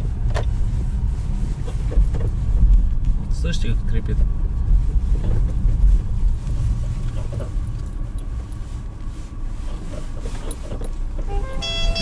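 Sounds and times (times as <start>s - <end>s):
car road rumble: 0.0s - 12.0s
suspension squeaking: 9.7s - 12.0s.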